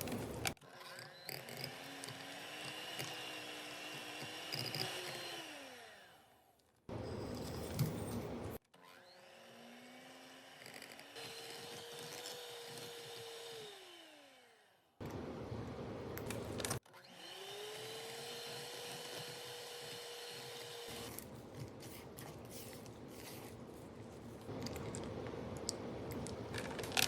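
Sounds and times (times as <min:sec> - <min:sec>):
electric mixer motor whine: 0:01.0 - 0:06.4, 0:09.0 - 0:14.7, 0:16.9 - 0:21.3.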